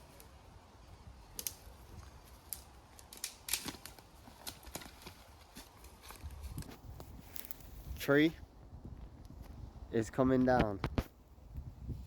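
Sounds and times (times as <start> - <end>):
wood cracking and snapping: 1.3 - 6.8.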